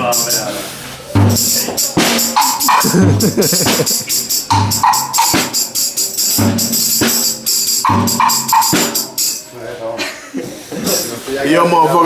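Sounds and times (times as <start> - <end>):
jangling tambourine-like percussion: 0.0 - 0.7, 1.3 - 9.5, 10.8 - 11.2
low kick drum: 1.2 - 5.6.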